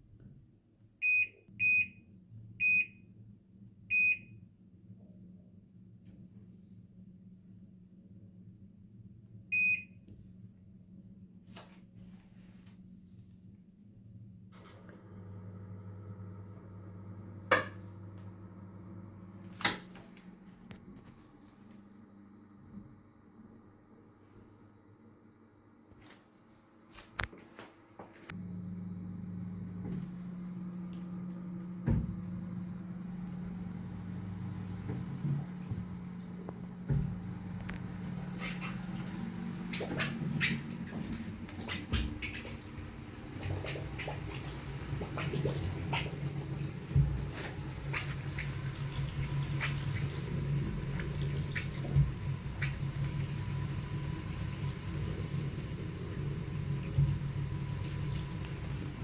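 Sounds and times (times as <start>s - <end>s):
washing machine motor humming: 14.5s - 26.2s, 28.2s - 59.0s
soft thump: 31.8s - 32.2s
water sloshing and splashing: 34.7s - 59.0s.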